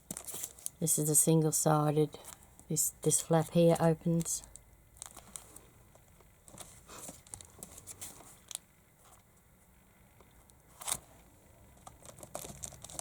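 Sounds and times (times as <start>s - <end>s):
cellophane sleeves crinkling: 0.0s - 0.8s, 4.9s - 8.6s, 11.8s - 13.0s.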